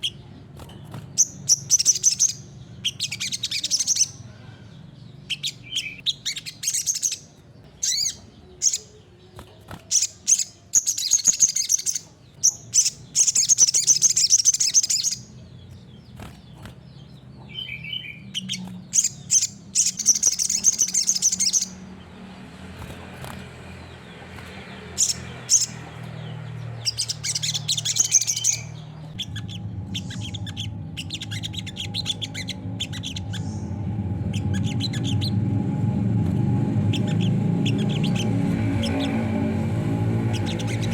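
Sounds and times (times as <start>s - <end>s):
bird chirping and trilling: 0.0s - 40.9s
low steady hum: 14.8s - 40.9s.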